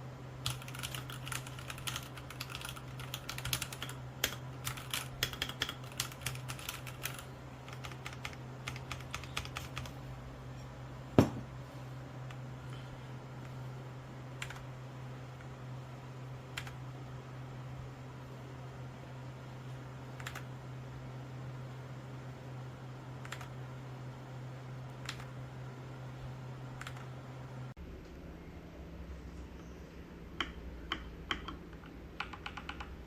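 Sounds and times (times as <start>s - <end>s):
steady low hum: 0.0s - 33.0s
mechanical keyboard typing: 0.4s - 10.0s, 14.4s - 14.7s, 16.5s - 16.8s, 20.2s - 20.5s, 23.2s - 23.5s, 25.0s - 25.3s, 26.8s - 27.1s, 32.2s - 33.0s
loud knock: 11.2s - 11.5s.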